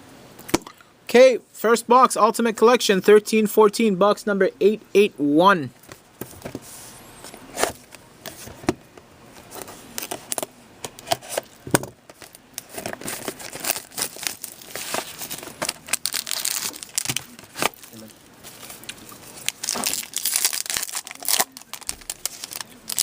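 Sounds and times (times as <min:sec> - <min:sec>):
packaging crinkling and tearing: 0:11.3 - 0:23.0.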